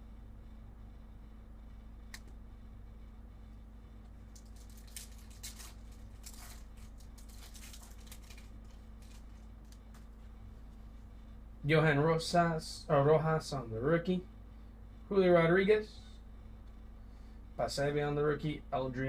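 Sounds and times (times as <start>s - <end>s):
faint steady hum: 0.0s - 19.0s
click: 2.1s - 2.4s
foil wrapper crinkling and tearing: 4.3s - 10.0s
cards rustling: 4.3s - 10.2s.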